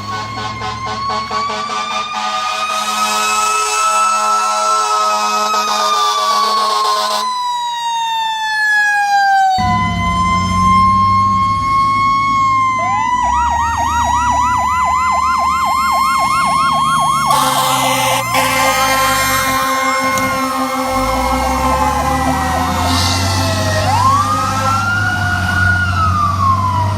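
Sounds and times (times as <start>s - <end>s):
air horn blasts: 0.0s - 7.3s, 9.6s - 11.6s, 17.2s - 25.4s
fire truck siren wailing: 0.0s - 26.9s
engine rumble: 9.6s - 26.9s.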